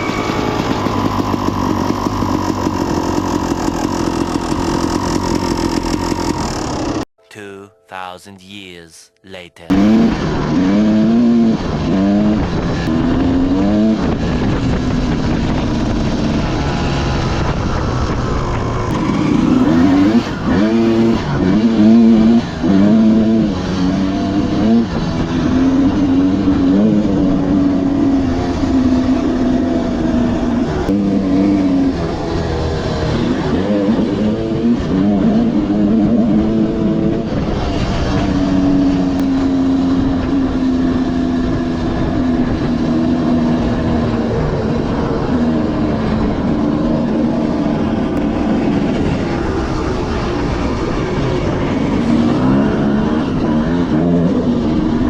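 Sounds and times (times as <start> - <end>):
dirt bike engines revving: 0.0 - 7.1.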